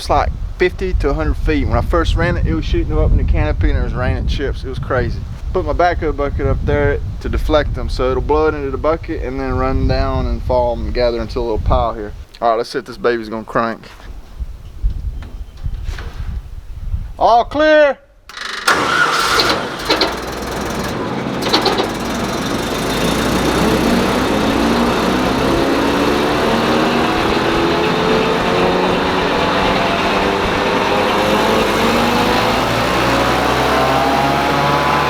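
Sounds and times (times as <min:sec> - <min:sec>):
wood chipper engine running: 0:18.3 - 0:35.0.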